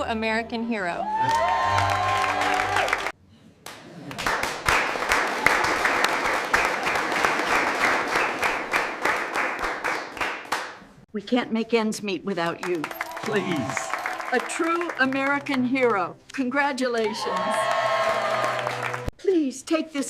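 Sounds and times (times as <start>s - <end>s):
crowd applauding: 1.2s - 3.1s, 3.7s - 10.7s, 12.7s - 15.8s, 17.0s - 19.1s.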